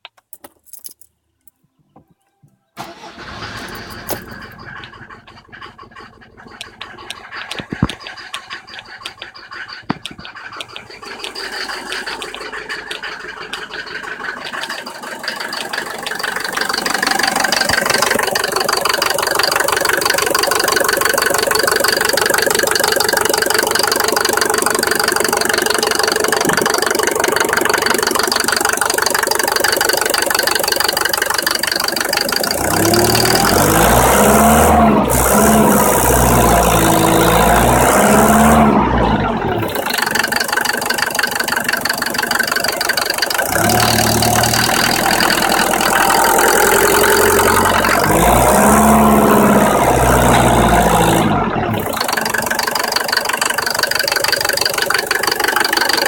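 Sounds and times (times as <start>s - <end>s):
diesel engine knocking: 2.9s - 56.0s
heavy low rumble: 3.3s - 19.7s.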